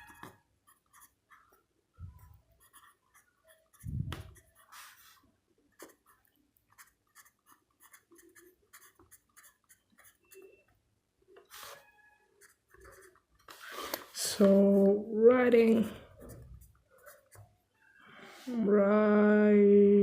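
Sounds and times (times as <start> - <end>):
pencil scratching on paper: 0.0 - 1.6, 2.2 - 10.6, 11.5 - 13.6, 16.0 - 17.5.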